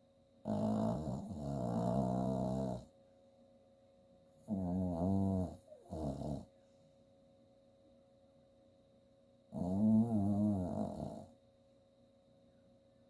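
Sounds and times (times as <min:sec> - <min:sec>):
dog snoring: 0:00.4 - 0:02.9, 0:04.4 - 0:06.5, 0:09.5 - 0:11.4.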